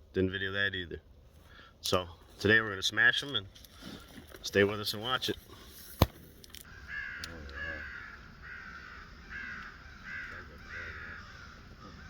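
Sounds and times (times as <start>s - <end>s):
crow cawing: 6.6s - 12.0s.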